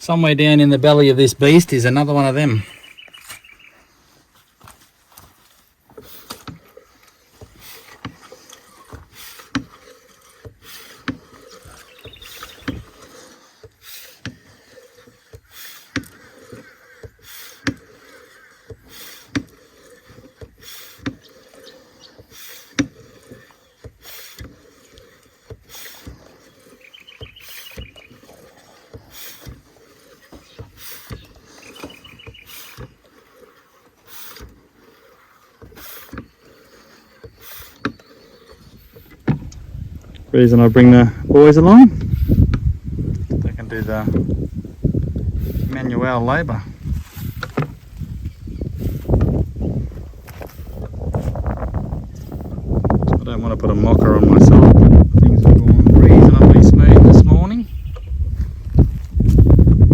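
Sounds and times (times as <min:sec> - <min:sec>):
bird trilling: 0:02.3 - 0:03.9, 0:11.6 - 0:12.9, 0:26.7 - 0:28.3, 0:30.4 - 0:33.0
hand oil pump knocking: 0:05.9 - 0:39.6.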